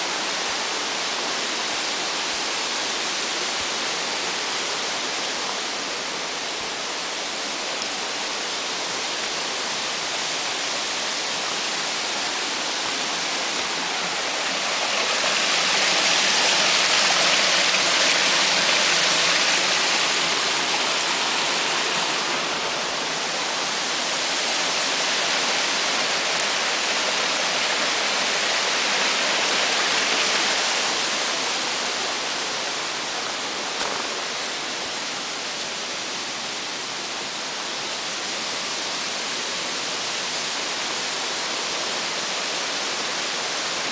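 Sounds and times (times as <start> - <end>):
stream rushing over rocks: 0.0 - 43.9.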